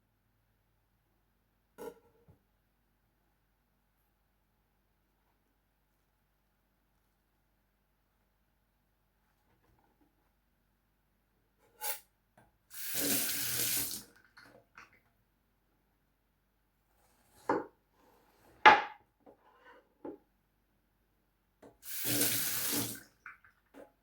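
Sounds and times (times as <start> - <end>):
tap water running: 12.7 - 14.5, 21.8 - 23.8.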